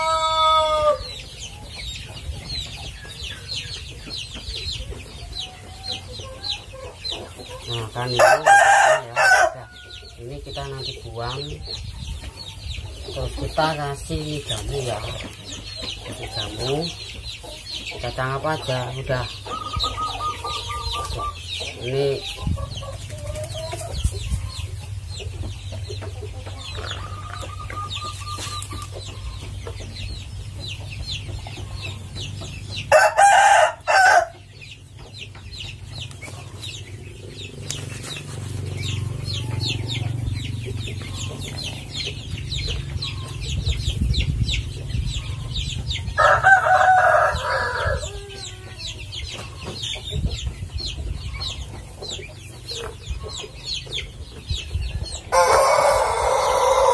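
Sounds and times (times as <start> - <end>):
rooster crowing: 0.0 - 1.1, 8.2 - 9.9, 32.9 - 34.4, 46.2 - 48.6, 55.3 - 56.9
chickens clucking: 0.0 - 56.9.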